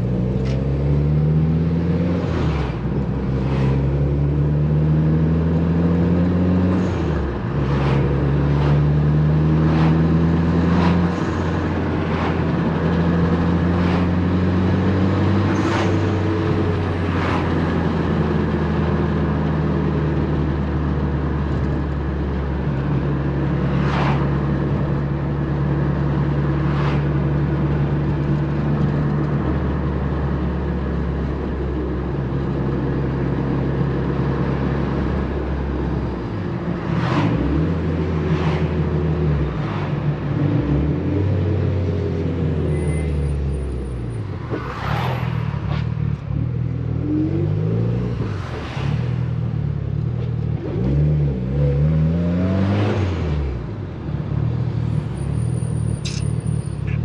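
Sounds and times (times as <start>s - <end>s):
car engine accelerating: 0.0s - 57.0s
short sharp ticks: 56.0s - 56.3s.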